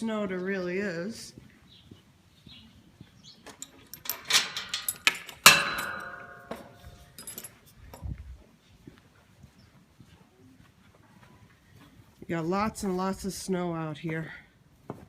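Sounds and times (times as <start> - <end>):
metal gate latch rattling: 3.5 - 7.5
metallic clang ringing: 3.6 - 7.5.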